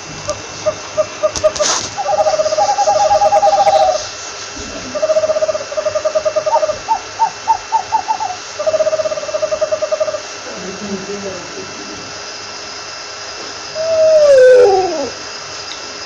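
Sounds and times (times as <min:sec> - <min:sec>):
owl hooting trills: 0:00.0 - 0:10.4, 0:13.7 - 0:15.3
owl hoots rising in pitch: 0:00.3 - 0:10.4, 0:13.7 - 0:15.4.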